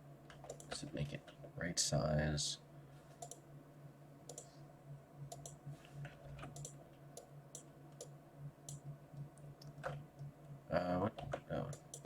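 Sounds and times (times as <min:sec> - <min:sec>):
steady low hum: 0:00.0 - 0:12.0
computer mouse clicks: 0:00.3 - 0:01.4, 0:03.2 - 0:03.4, 0:04.3 - 0:04.5, 0:05.3 - 0:05.6, 0:06.4 - 0:08.1, 0:08.7 - 0:10.3, 0:11.2 - 0:12.0.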